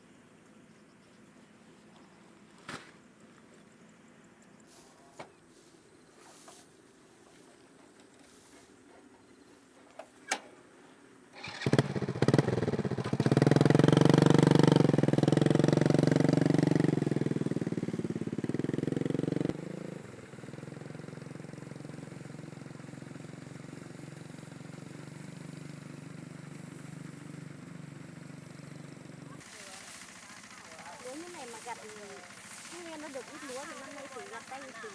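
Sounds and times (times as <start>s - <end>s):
small engine running: 11.3s - 34.9s.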